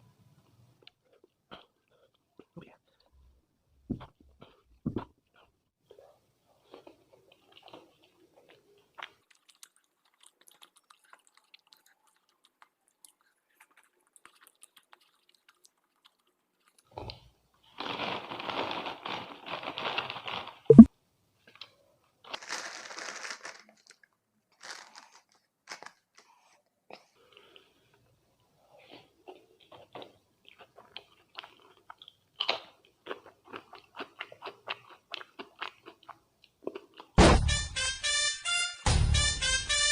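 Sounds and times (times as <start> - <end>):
crunching crunchy food: 6.6 - 20.7, 21.6 - 26.5, 28.9 - 37.2
sharp knock: 37.2 - 37.7.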